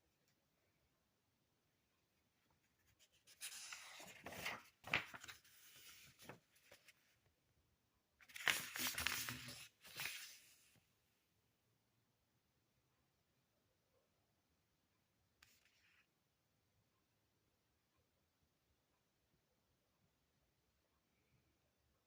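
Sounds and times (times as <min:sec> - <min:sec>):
paper pages rustling: 0:02.7 - 0:07.2, 0:08.2 - 0:10.7
paper crackling: 0:03.0 - 0:07.0, 0:08.2 - 0:10.6.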